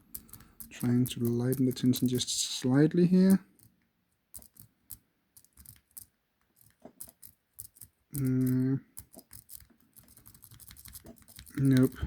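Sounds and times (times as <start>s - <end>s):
person humming hmm: 8.2s - 8.8s.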